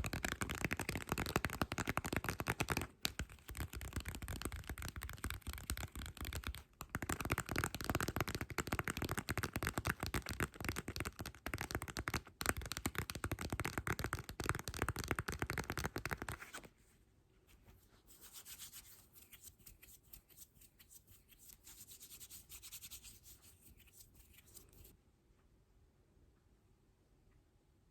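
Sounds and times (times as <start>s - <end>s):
scratching and rubbing on a surface: 17.5s - 24.9s.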